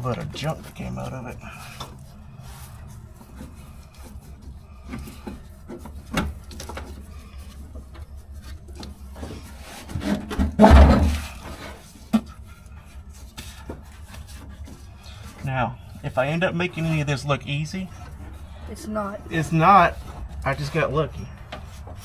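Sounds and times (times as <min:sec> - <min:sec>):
taps and scrapes: 0:02.8 - 0:15.5, 0:19.9 - 0:22.0
clattering knock: 0:10.3 - 0:11.4.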